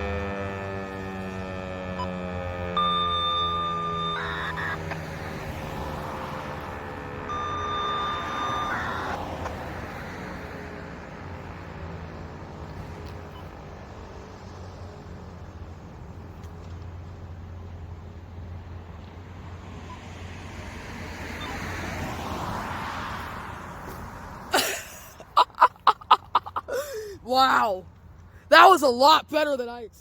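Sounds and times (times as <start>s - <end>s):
warning siren winding down: 0.0s - 10.7s, 20.7s - 22.2s
road traffic rumble: 0.0s - 30.0s
brief high steady tone: 2.8s - 5.0s, 7.2s - 9.2s.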